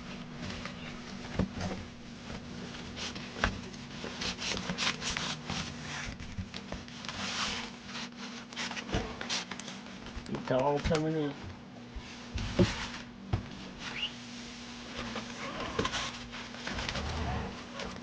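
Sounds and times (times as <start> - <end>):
packaging rubbing and rustling: 0.6 - 10.0.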